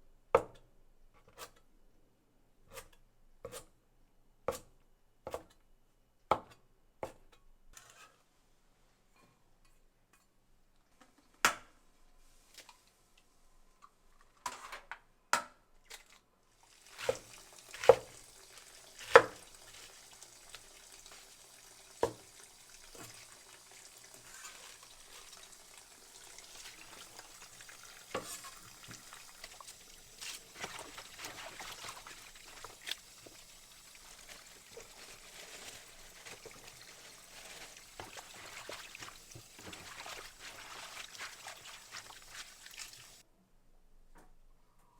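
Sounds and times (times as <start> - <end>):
food sizzling in a pan: 16.5 - 43.2
stirring scrapes and clicks: 28.1 - 33.4, 34.1 - 43.2.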